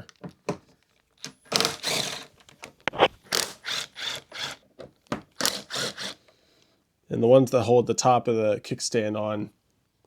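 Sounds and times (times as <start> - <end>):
hex driver clicking and scraping: 1.5 - 4.6, 5.4 - 6.3.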